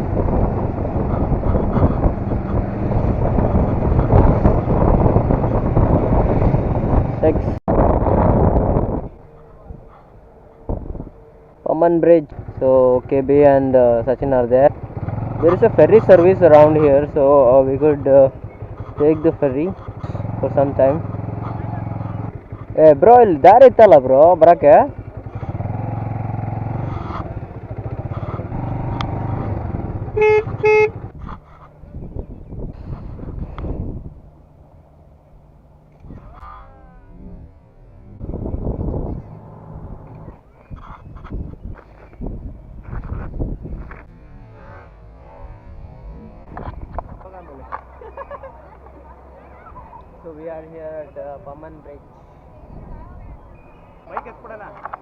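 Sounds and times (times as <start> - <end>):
wind buffeting microphone: 0.0 - 11.3, 25.0 - 34.5, 36.0 - 47.9, 51.4 - 55.0
motorcycle engine running: 0.0 - 50.4
short horn beeps: 30.2 - 31.1.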